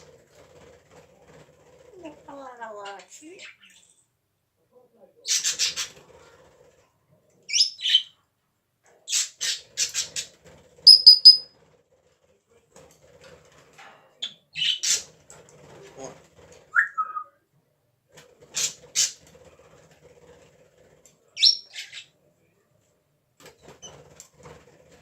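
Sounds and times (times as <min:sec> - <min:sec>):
parrot chirps: 0:10.9 - 0:11.5, 0:21.4 - 0:22.1
sharp high squeak: 0:10.9 - 0:11.5.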